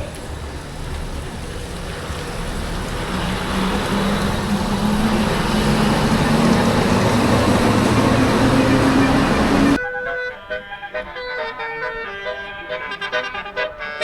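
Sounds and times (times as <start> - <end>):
bus engine running: 0.0 - 9.8.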